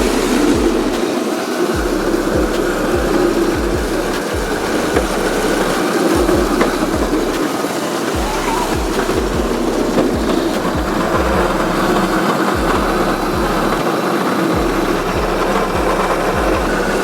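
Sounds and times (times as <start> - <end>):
low uneven thumps: 0.0 - 1.1, 1.7 - 13.8
vehicle engine running: 0.0 - 17.0.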